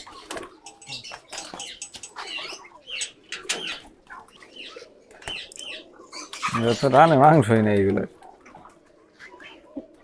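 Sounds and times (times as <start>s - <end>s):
pigeons flapping wings: 0.0s - 2.1s
high squeaky chirps: 0.0s - 3.9s.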